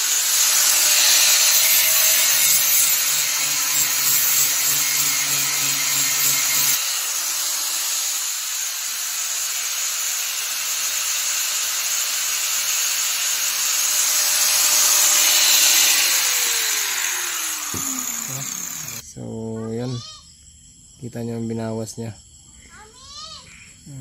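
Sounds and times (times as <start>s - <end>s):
electric grinder abrading metal: 0.0s - 19.0s.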